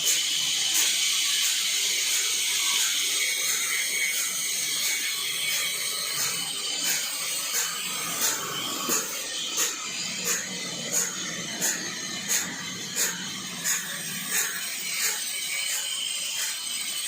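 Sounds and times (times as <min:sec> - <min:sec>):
band saw cutting wood: 0:00.0 - 0:17.0.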